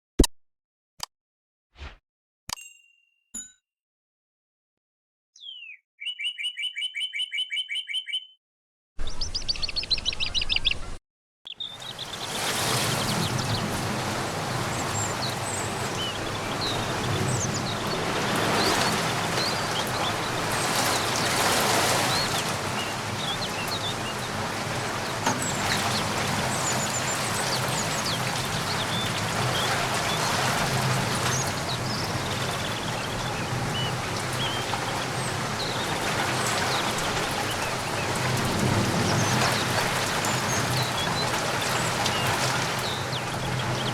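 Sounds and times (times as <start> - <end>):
bird chirps: 5.4 - 8.4, 9.0 - 13.7
steady rain falling: 11.6 - 43.9.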